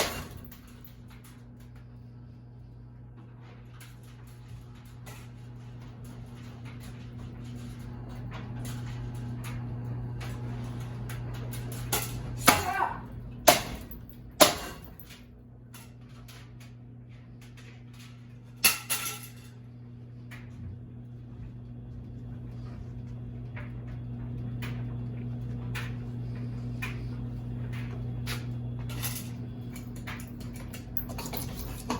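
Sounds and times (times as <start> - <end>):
steady electrical hum: 0.0 - 31.9
hard strikes on ceiling fan: 11.9 - 15.1.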